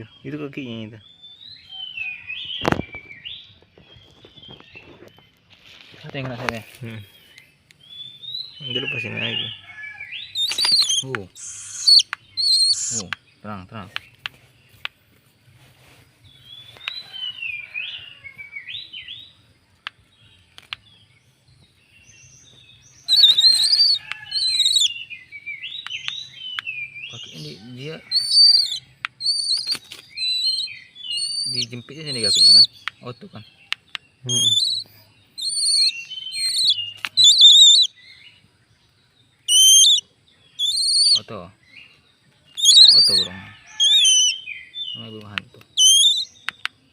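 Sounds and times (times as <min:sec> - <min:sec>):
whistled bird notes: 0:07.2 - 0:14.2, 0:22.0 - 0:38.4, 0:39.4 - 0:46.7
harsh bird call: 0:07.9 - 0:14.0, 0:23.0 - 0:38.3, 0:39.4 - 0:41.6, 0:42.5 - 0:46.5
sharp clicks: 0:10.4 - 0:15.0, 0:19.8 - 0:20.9, 0:28.2 - 0:30.6, 0:33.7 - 0:34.8, 0:35.4 - 0:37.8, 0:45.2 - 0:46.8.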